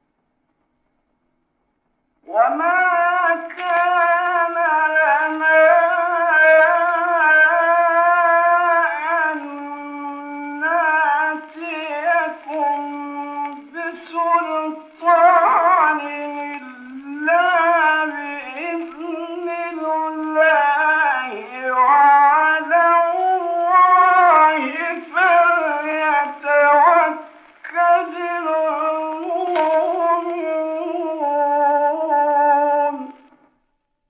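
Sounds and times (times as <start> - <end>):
man chanting: 2.2 - 33.4.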